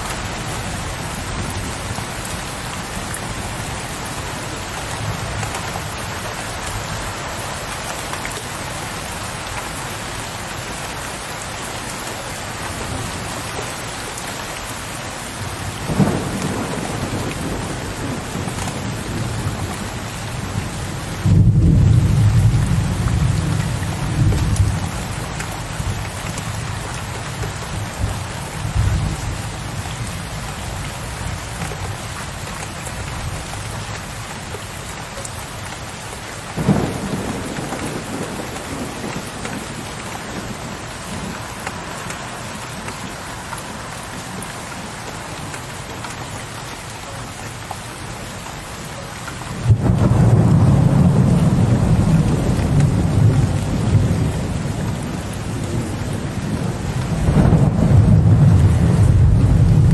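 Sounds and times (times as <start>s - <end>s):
steady rain falling: 0.0s - 59.9s
low thunder rumble: 15.8s - 25.0s, 36.6s - 41.3s, 49.6s - 59.9s
thunder crack: 49.7s - 55.1s, 55.7s - 59.9s.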